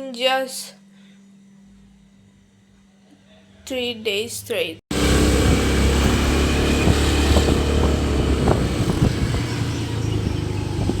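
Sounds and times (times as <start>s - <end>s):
vehicle rumble: 4.9s - 11.0s.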